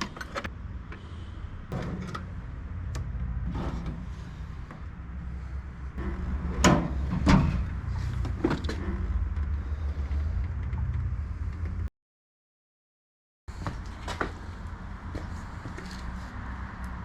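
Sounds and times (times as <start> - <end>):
steady low rumble: 0.0 - 11.9.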